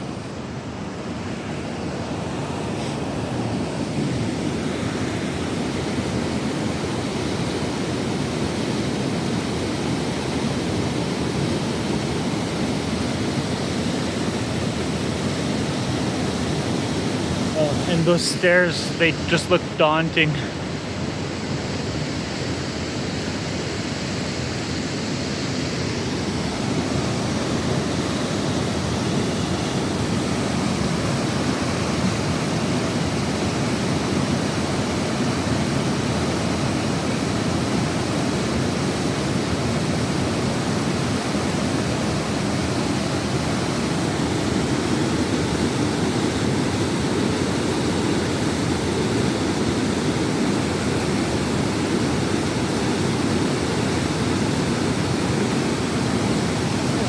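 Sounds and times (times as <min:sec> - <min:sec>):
waterfall rushing: 0:11.3 - 0:21.5.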